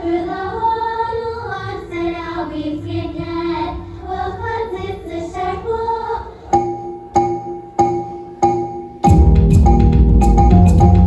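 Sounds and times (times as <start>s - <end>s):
sharp struck notes: 6.5s - 11.0s.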